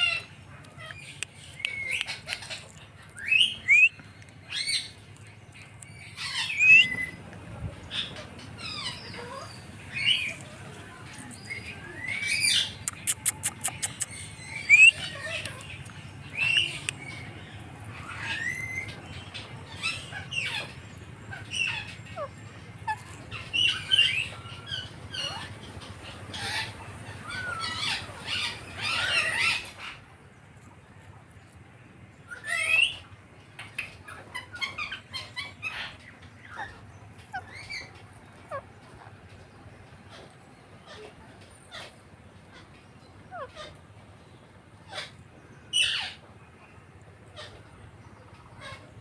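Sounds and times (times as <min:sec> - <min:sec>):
parakeet chirping and squawking: 0:01.8 - 0:05.0, 0:05.8 - 0:07.2, 0:07.9 - 0:10.4, 0:11.4 - 0:30.0, 0:32.3 - 0:46.3, 0:47.3 - 0:47.8, 0:48.4 - 0:49.0.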